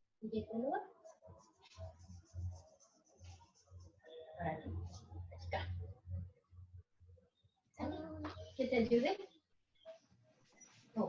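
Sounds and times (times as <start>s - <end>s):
crayon scribbling on paper: 1.0s - 4.0s.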